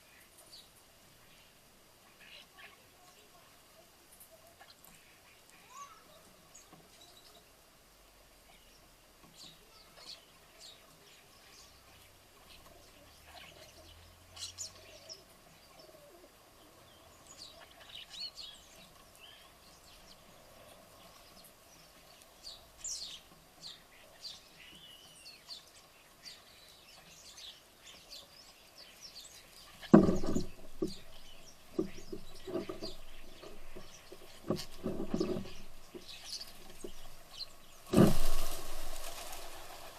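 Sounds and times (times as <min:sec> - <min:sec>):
birds chirping: 0:00.0 - 0:07.7, 0:08.4 - 0:39.9
flutter of wings: 0:29.9 - 0:39.9.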